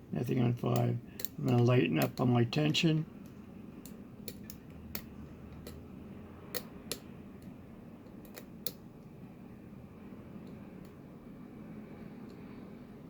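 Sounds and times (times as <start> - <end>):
lock pick clicking in padlock: 0.7 - 2.2.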